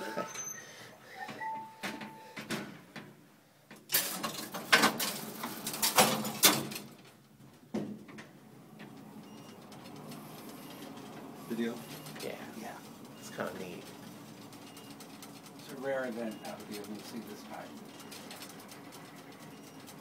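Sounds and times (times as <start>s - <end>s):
metal clattering and sliding: 3.9s - 7.1s.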